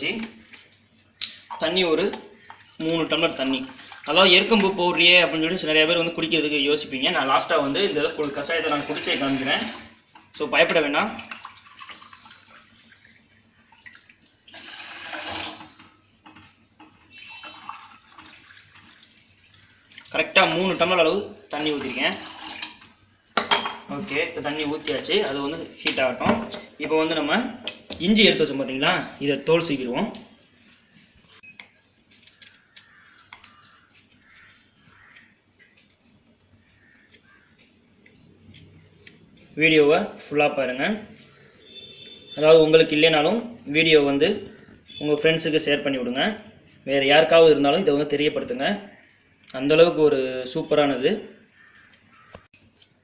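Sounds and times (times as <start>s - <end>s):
water pouring into pot: 1.6s - 5.0s, 7.4s - 10.1s, 10.9s - 16.0s, 16.9s - 20.8s, 21.5s - 23.2s.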